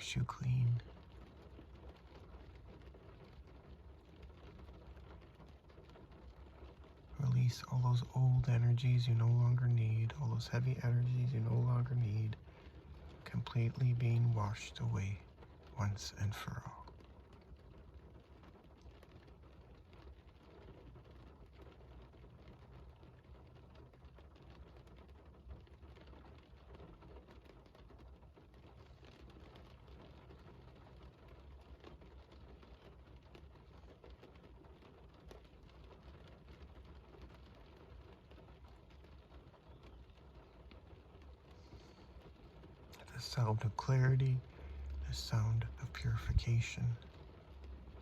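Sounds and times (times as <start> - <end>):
raindrops ticking and pattering: 0.0 - 48.0
steady rainfall: 0.0 - 48.0.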